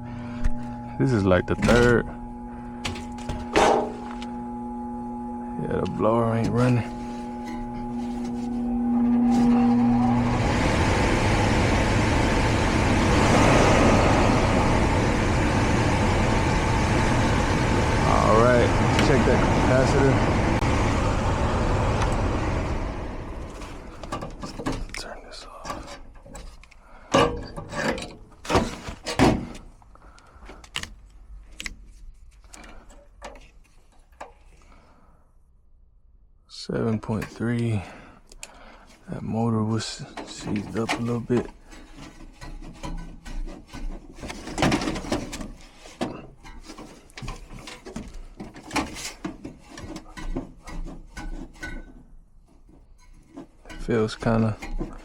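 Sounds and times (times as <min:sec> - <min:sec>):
low electrical hum: 0:00.0 - 0:55.0
machinery rushing noise: 0:09.2 - 0:23.9.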